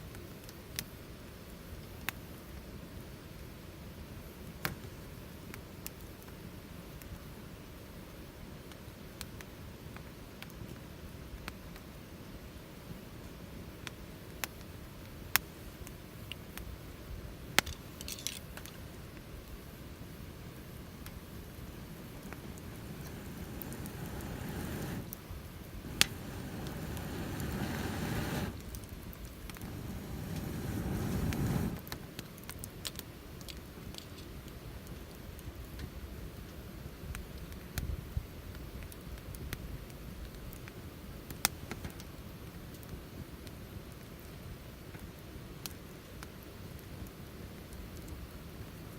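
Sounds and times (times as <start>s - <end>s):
wood fire crackling: 0.1s - 48.9s
steady low rumble: 20.6s - 31.9s
sharp fire pops: 20.8s - 34.1s.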